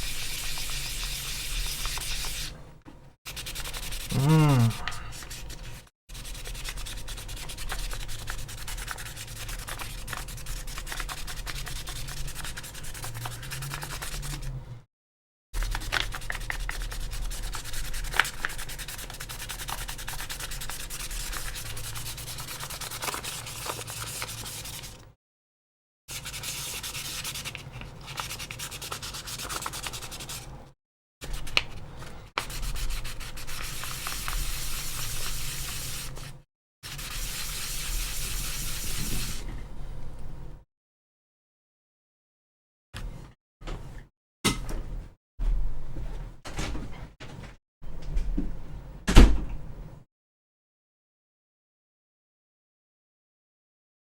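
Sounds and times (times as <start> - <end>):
sandpaper rubbing on plastic: 0.0 - 2.6, 3.3 - 14.5, 15.6 - 25.0, 32.4 - 39.4.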